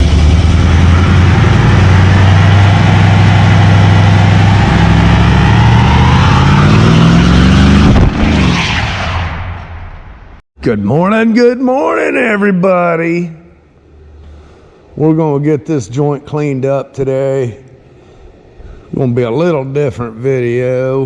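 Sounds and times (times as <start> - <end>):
car engine revving: 0.0 - 10.1.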